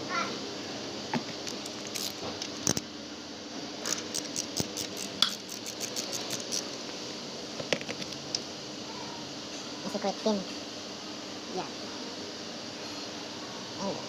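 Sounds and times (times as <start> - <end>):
metal tools clicking and tapping: 3.8 - 6.7.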